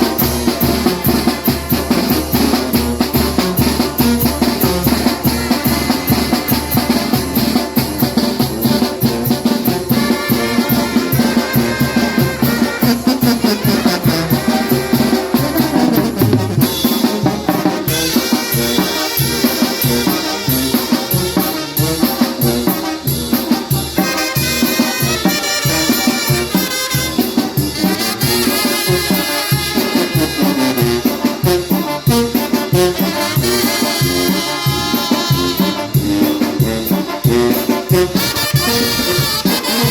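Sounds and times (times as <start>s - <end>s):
drum and percussion beat: 0.0s - 39.9s
trumpet melody: 0.0s - 39.9s
latin dance music: 9.7s - 18.6s, 37.8s - 39.9s.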